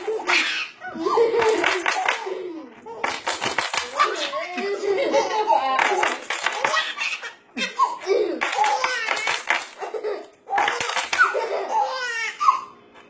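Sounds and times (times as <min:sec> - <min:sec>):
baby laughing: 0:00.0 - 0:12.7
keys jingling: 0:05.7 - 0:06.8, 0:08.4 - 0:11.2.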